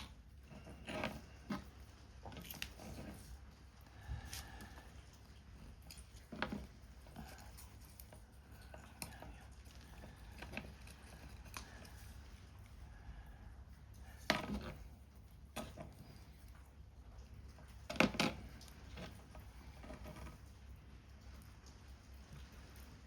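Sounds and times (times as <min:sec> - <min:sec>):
rain: 0:20.4 - 0:23.0.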